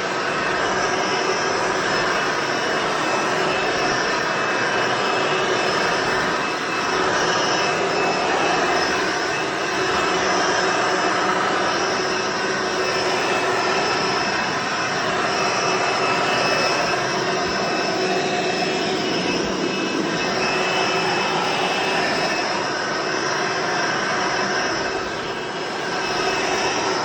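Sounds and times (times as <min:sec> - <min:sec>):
vacuum cleaner running: 0:00.0 - 0:27.0.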